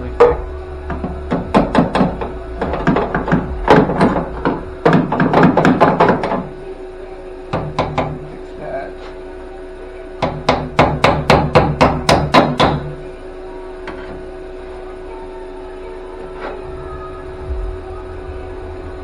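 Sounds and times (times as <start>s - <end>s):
hammer blows on metal: 0.0s - 19.0s
steady hum: 0.0s - 19.0s.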